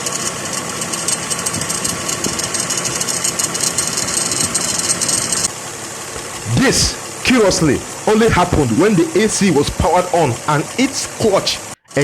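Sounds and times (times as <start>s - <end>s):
car engine running: 0.0s - 12.0s
metal grinding rattle: 0.2s - 8.0s.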